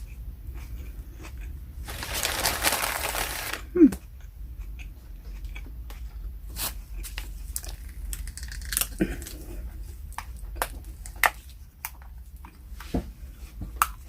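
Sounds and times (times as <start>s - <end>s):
plastic bottle crackling: 1.9s - 3.7s.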